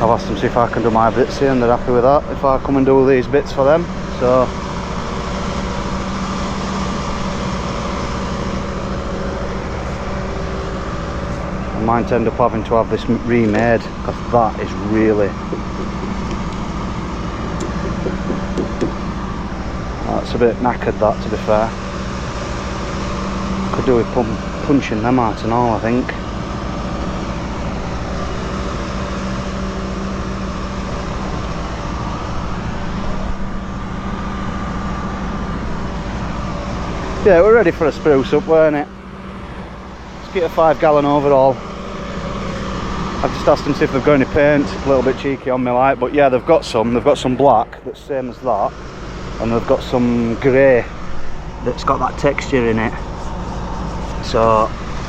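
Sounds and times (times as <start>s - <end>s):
engine running: 0.0s - 55.0s.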